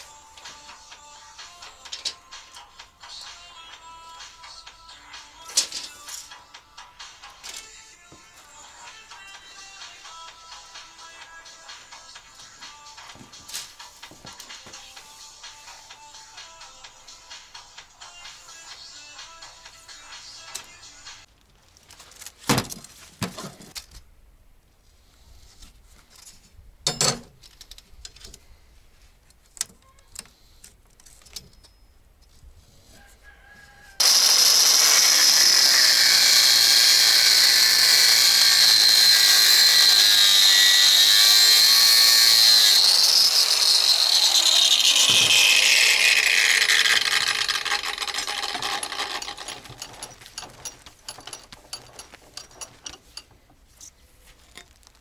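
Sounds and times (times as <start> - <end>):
power tool motor whine: 34.0 - 49.8
handling clicks and knocks: 48.5 - 55.0.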